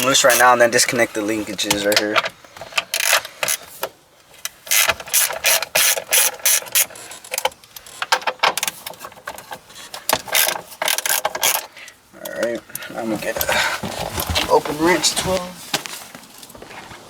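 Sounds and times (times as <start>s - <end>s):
hand ratchet clicking: 0.0s - 0.6s, 1.7s - 12.9s.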